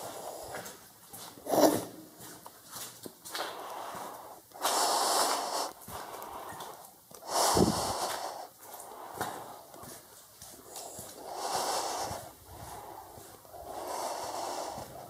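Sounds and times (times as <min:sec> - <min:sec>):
person breathing heavily: 0:00.0 - 0:00.8, 0:03.4 - 0:15.0.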